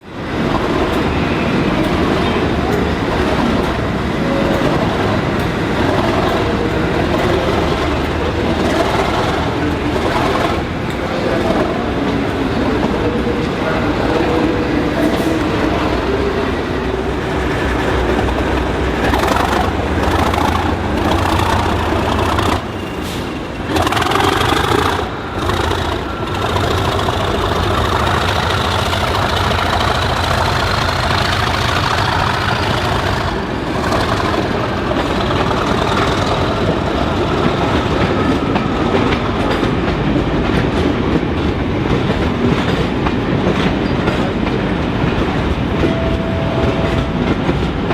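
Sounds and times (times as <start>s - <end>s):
diesel locomotive engine: 0.0s - 47.9s
wheels clicking over rail joints: 17.0s - 45.9s.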